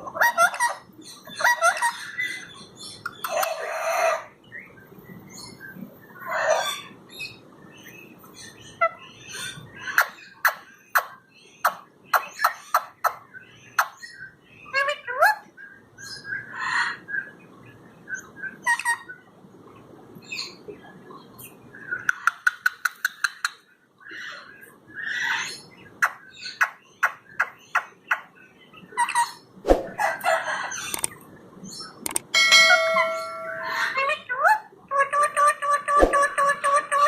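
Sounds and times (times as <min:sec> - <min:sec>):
parrots squawking and chattering: 0:00.0 - 0:04.4, 0:06.2 - 0:07.4, 0:14.7 - 0:15.5, 0:18.5 - 0:19.2, 0:24.1 - 0:28.3, 0:28.9 - 0:31.1, 0:32.1 - 0:37.0
sharp clicks: 0:30.9 - 0:31.2, 0:32.0 - 0:32.3.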